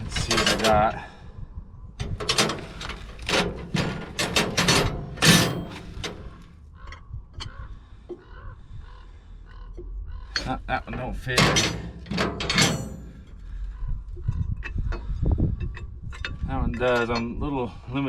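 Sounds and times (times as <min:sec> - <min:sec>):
metal wrenches clinking: 0:00.0 - 0:01.0, 0:02.0 - 0:07.6, 0:10.3 - 0:13.5, 0:14.2 - 0:17.5.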